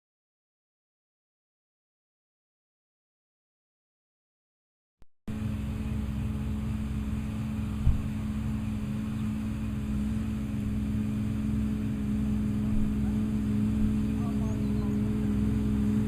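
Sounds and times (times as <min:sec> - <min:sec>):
tractor engine running: 0:05.3 - 0:16.0
thump: 0:07.8 - 0:08.1.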